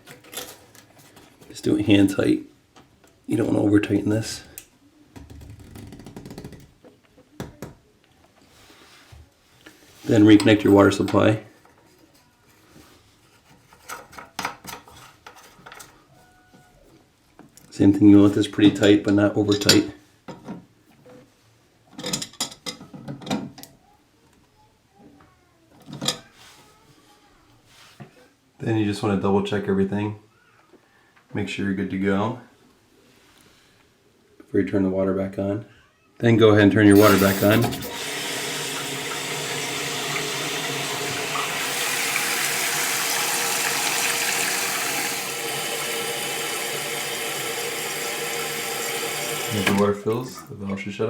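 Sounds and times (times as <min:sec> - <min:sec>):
toilet tank refilling with water: 0:37.0 - 0:50.6.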